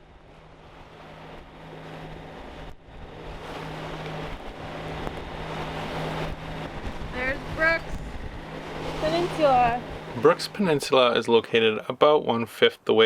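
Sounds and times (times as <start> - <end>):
boat engine humming: 0.0 - 12.0
wind: 0.0 - 13.0
rushing water: 3.2 - 11.4.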